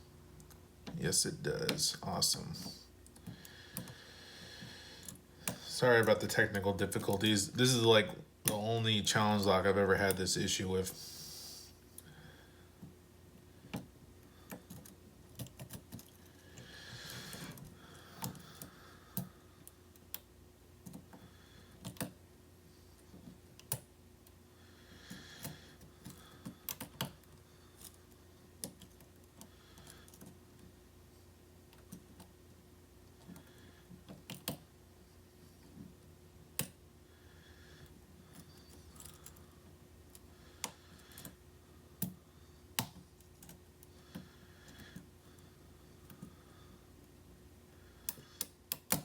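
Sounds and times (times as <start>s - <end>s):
lock pick clicking: 48.1s - 49.0s.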